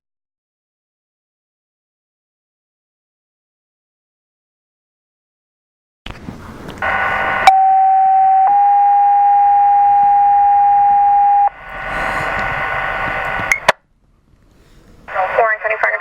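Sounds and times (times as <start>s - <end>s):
radio hiss: 6.4s - 7.6s, 11.5s - 13.8s, 15.0s - 16.0s
two-tone radio page: 6.8s - 13.8s, 15.1s - 16.0s
radio squelch click: 11.7s - 13.8s.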